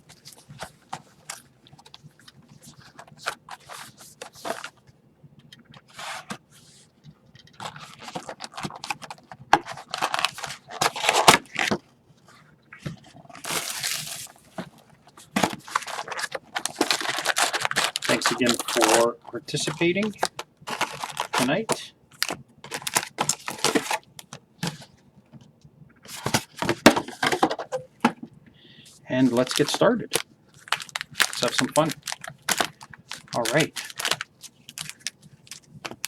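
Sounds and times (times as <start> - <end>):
box packaging tearing and crackling: 7.6 - 11.8, 12.9 - 24.8, 29.3 - 36.0.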